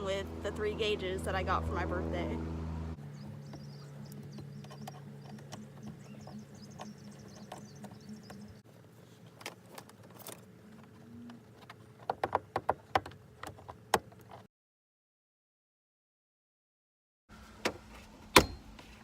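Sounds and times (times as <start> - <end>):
steady low hum: 0.0 - 12.1.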